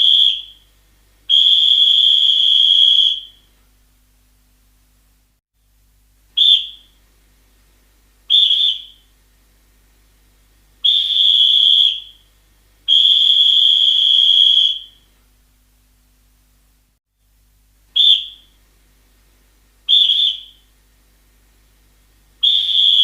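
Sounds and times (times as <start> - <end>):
referee's whistle blasts: 1.3 - 3.4, 8.3 - 9.0, 12.9 - 15.0, 19.9 - 20.6, 22.4 - 23.0.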